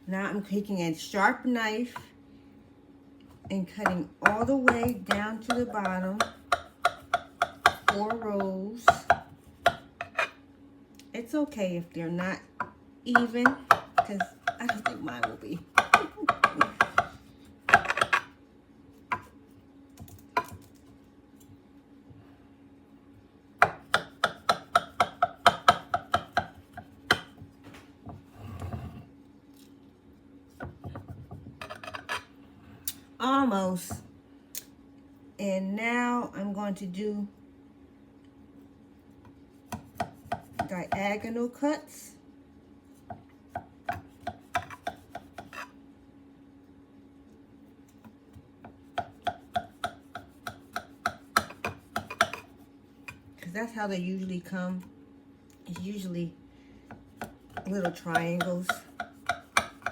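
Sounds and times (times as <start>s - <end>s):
knife tapping through pastry: 3.8s - 10.3s, 12.6s - 18.3s, 23.6s - 28.2s, 39.2s - 41.0s, 43.0s - 45.7s, 48.0s - 53.2s, 56.9s - 59.9s.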